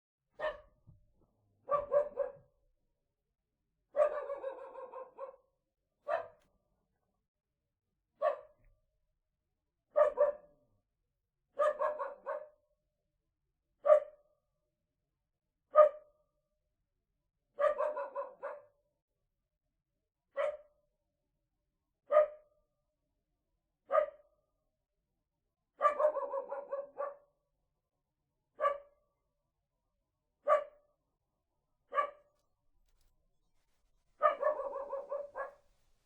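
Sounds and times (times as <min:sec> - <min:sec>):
small dog barking: 0:00.4 - 0:00.7, 0:01.6 - 0:02.5, 0:03.9 - 0:05.4, 0:06.0 - 0:06.4, 0:08.2 - 0:08.6, 0:09.9 - 0:10.5, 0:11.6 - 0:12.6, 0:13.8 - 0:14.2, 0:15.7 - 0:16.0, 0:17.6 - 0:18.7, 0:20.4 - 0:20.6, 0:22.1 - 0:22.4, 0:23.9 - 0:24.2, 0:25.8 - 0:27.3, 0:28.6 - 0:29.0, 0:30.4 - 0:30.8, 0:31.9 - 0:32.3, 0:34.2 - 0:35.7.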